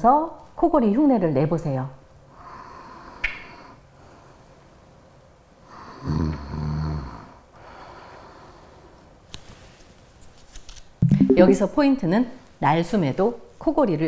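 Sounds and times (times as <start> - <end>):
person imitating snoring: 5.9 - 7.4.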